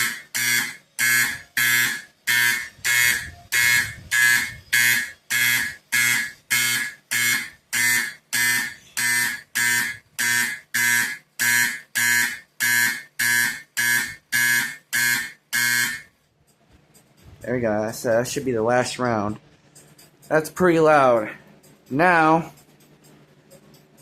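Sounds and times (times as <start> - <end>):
fire alarm horn blasts: 0.0 - 16.2.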